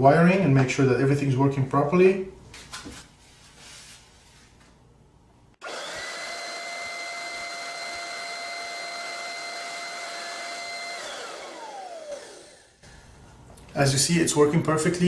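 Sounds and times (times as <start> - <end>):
vacuum motor running with high whine: 5.6 - 12.8.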